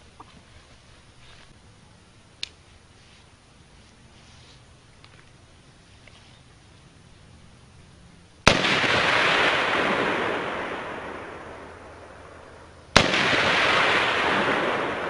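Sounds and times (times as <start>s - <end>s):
rifle shots: 8.4s - 15.0s
rush of noise after shot: 8.4s - 15.0s.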